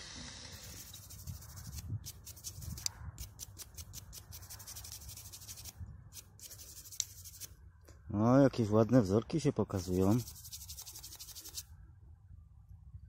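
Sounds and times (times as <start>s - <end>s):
hand rubbing soil off metal spoon: 0.0s - 7.5s, 9.7s - 11.7s.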